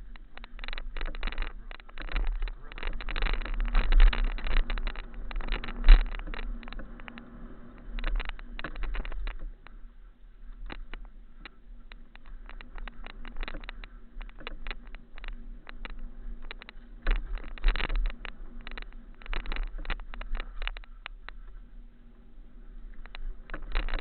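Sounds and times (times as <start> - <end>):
bike clattering over rocks: 0.0 - 9.8, 10.6 - 21.4
steady low rumble: 0.0 - 24.0.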